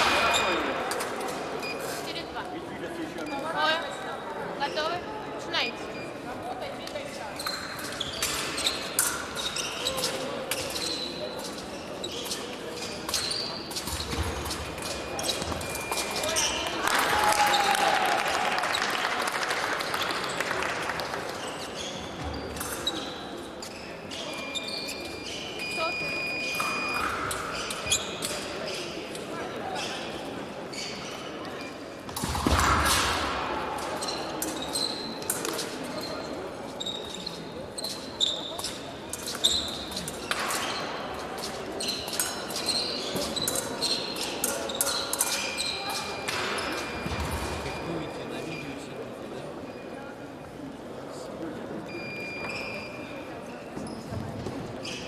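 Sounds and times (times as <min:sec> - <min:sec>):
fencing blades clashing: 0:06.9 - 0:16.6, 0:32.2 - 0:36.4, 0:37.0 - 0:47.5.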